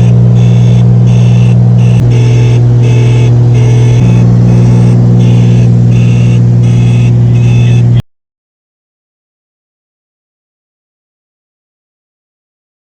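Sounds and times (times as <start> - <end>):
propeller engine running: 0.0 - 8.0
pulsing high tone: 0.0 - 8.0.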